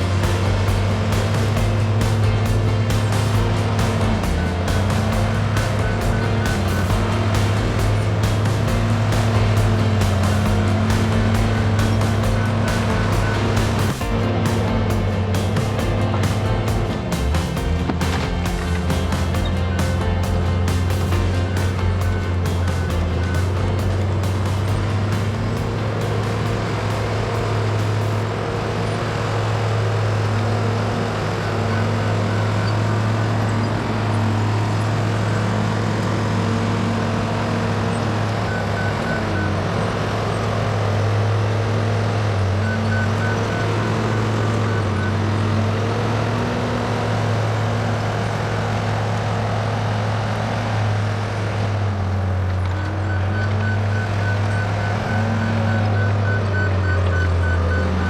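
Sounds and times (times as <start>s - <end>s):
bulldozer diesel engine working: 0.0s - 58.0s
reversing alarm beeping: 52.8s - 58.0s.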